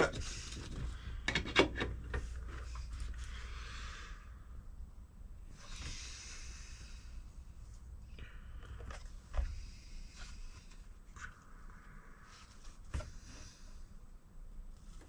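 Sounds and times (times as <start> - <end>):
person exhaling breathily: 5.6 - 7.3.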